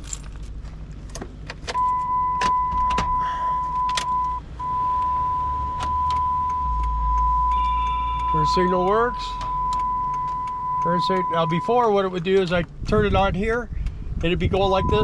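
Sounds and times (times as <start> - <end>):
high electronic warning tone: 1.8 - 11.9, 14.7 - 15.0.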